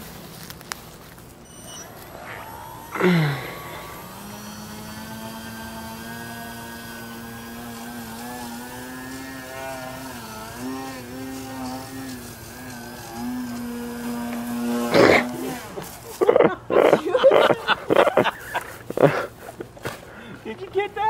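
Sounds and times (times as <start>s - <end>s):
model airplane motor whine: 1.5s - 16.1s
propeller drone: 1.5s - 17.0s.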